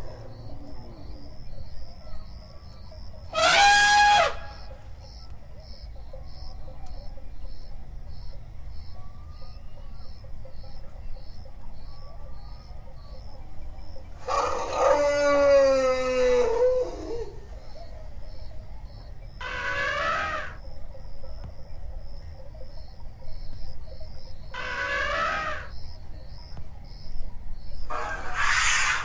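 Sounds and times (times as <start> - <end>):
elephant trumpeting: 3.4 - 4.5, 19.4 - 20.6, 24.6 - 25.7, 27.9 - 29.0.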